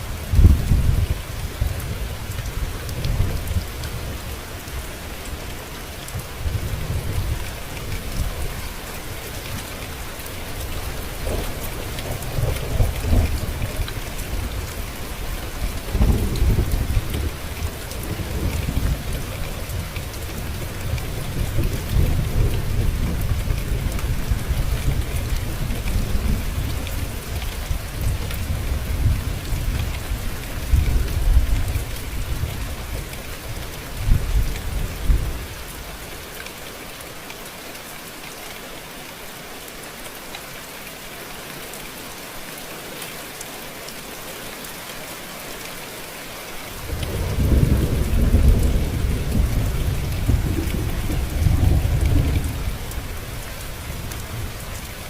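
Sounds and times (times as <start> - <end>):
steady rain: 0.0 - 55.0
thunder rumbling: 46.8 - 54.6.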